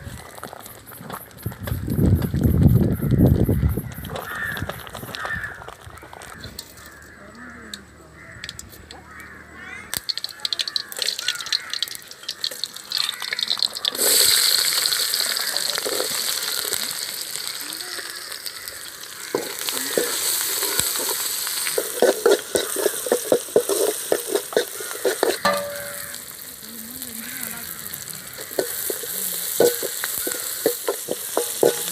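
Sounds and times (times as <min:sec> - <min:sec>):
food sizzling in hot oil: 0:09.8 - 0:31.9
ladle scraping a pan: 0:19.3 - 0:26.4, 0:28.4 - 0:31.9.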